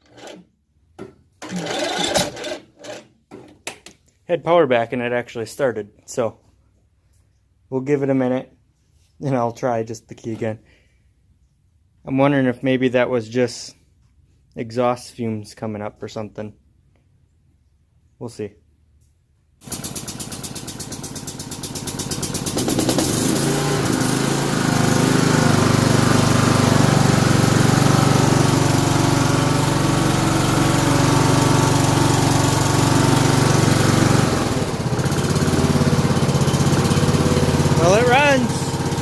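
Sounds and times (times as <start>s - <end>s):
electric starter cranking: 0.0s - 0.5s, 1.4s - 3.1s, 19.6s - 39.0s
lawn tractor engine running: 1.4s - 2.6s, 19.6s - 39.0s.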